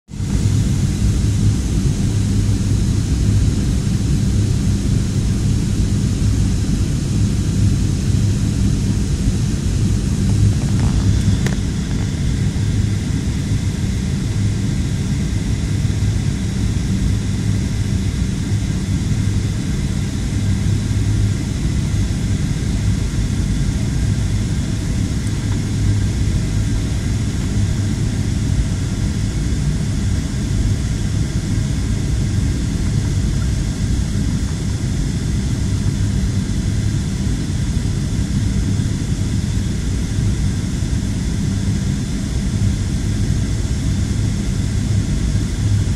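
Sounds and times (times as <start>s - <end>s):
constant low hum: 0.1s - 45.9s
jet engines droning: 0.1s - 45.9s
rushing air: 8.8s - 14.2s.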